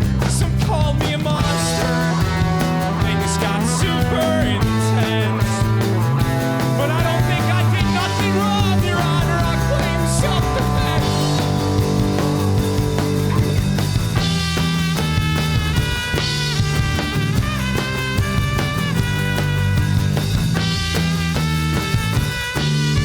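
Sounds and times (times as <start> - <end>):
rock band playing live: 0.0 - 23.0.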